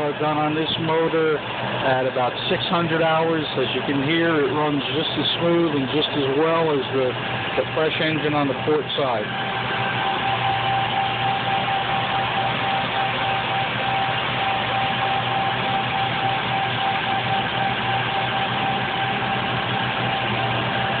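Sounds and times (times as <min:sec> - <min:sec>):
boat engine droning with whine: 0:00.0 - 0:21.0.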